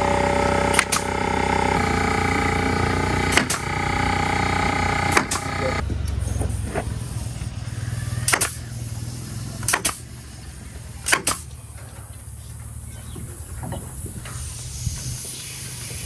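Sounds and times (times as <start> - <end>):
staple gun strikes: 0.7 - 1.1, 3.3 - 3.7, 5.1 - 5.5, 8.3 - 8.6, 9.6 - 10.0, 11.0 - 11.5.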